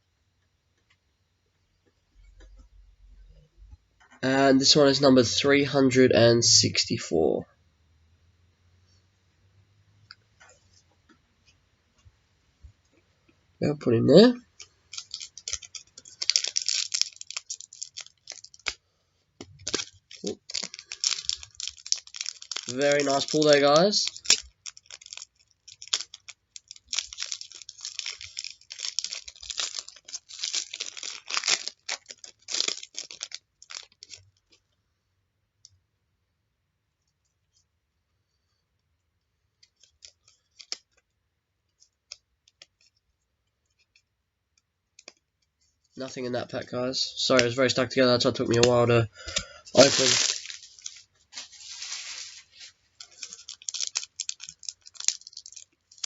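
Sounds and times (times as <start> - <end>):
card packaging crinkling: 14.5 - 18.8, 19.4 - 34.6, 39.6 - 41.0, 48.2 - 56.0.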